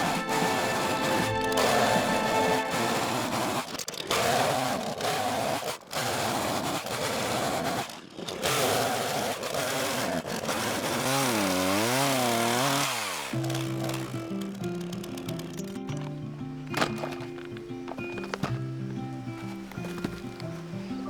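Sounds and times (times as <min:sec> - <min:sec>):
small petrol engine revving: 0:00.0 - 0:15.8.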